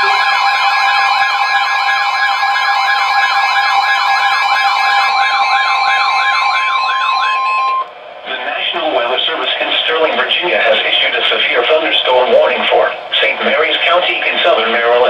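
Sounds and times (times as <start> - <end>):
steady high alert tones: 0.0 - 7.9
warbling siren-like tone: 0.0 - 7.9.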